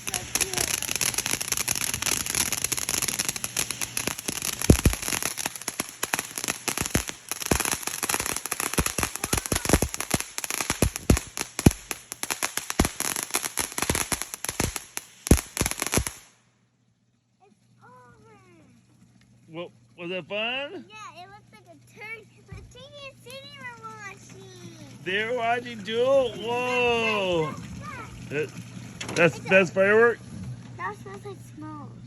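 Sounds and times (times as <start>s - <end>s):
firework crackling and popping: 0.0s - 16.4s.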